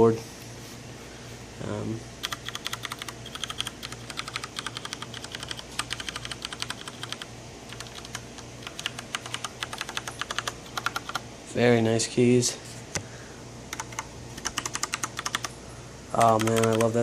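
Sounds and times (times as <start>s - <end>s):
mechanical keyboard typing: 2.2s - 11.2s, 13.7s - 15.5s, 16.2s - 17.0s.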